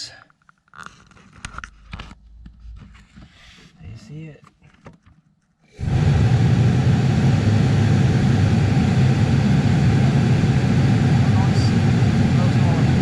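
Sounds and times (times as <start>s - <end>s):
heater blower fan running: 5.7s - 13.0s.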